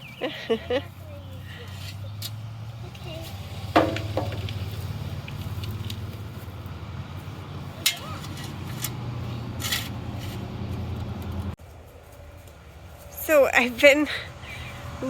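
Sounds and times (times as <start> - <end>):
knocks and rattles: 3.6 - 6.7.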